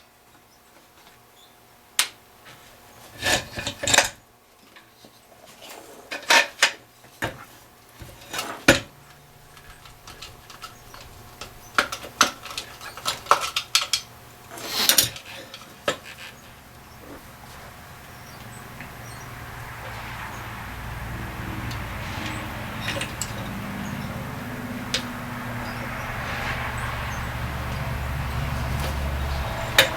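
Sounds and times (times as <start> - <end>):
metal tools clinking and clattering: 22.1 - 23.6.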